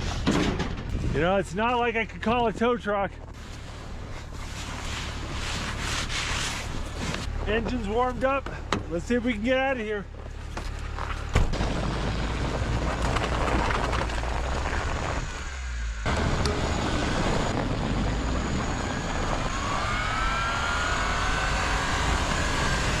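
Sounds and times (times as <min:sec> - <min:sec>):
road noise over snow: 0:00.9 - 0:23.0
small truck engine rumbling: 0:06.6 - 0:23.0
faint rising whine: 0:15.0 - 0:23.0.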